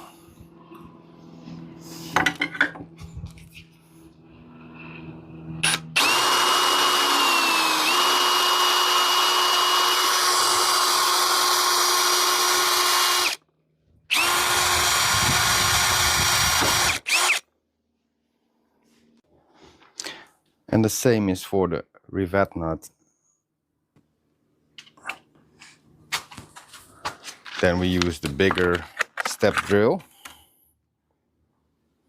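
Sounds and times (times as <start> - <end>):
electric drill drilling: 5.6 - 13.4, 14.1 - 17.5.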